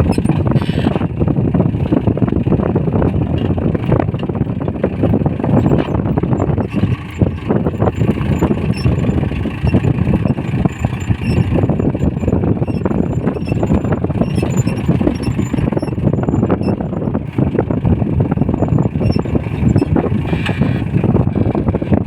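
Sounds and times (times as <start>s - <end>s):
faint short high squeaks: 0.0s - 1.1s, 5.5s - 17.2s, 18.3s - 21.9s
tractor diesel engine running: 0.0s - 22.0s.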